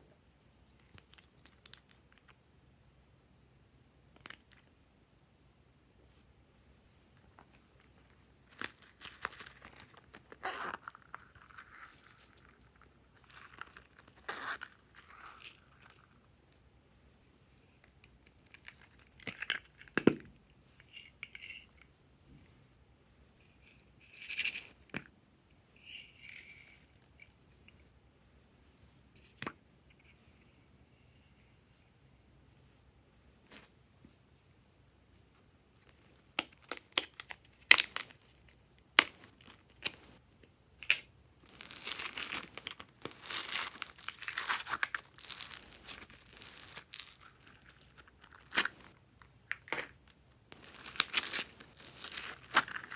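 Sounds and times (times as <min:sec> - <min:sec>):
slime squishing and crackling: 0:41.4 - 0:48.8, 0:50.5 - 0:52.9.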